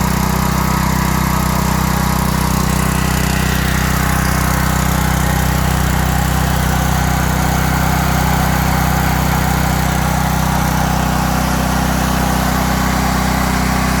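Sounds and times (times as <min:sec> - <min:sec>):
generator engine running: 0:00.0 - 0:14.0.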